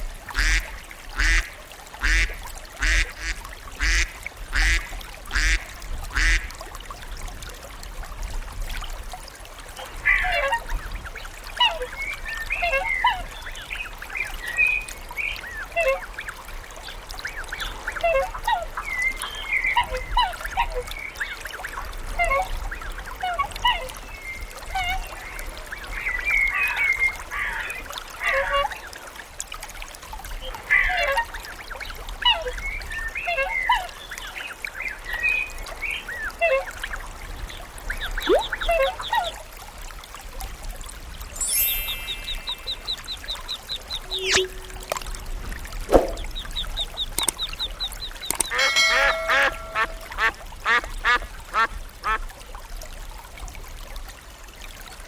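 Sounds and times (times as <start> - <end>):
high chirps: 41.3 - 45.2, 45.9 - 50.1
flock of birds calling: 48.3 - 50.2.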